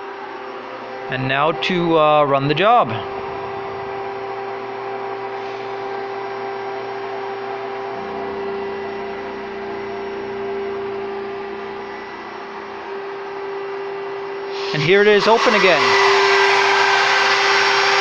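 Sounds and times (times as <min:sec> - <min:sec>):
low tone: 0:00.0 - 0:14.5
muffled motor whine and hum: 0:00.0 - 0:14.5.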